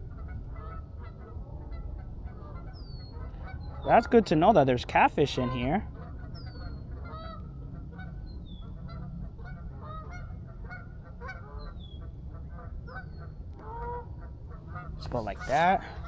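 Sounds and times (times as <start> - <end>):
geese honking: 0.2 - 4.3, 5.3 - 7.4, 12.4 - 16.0.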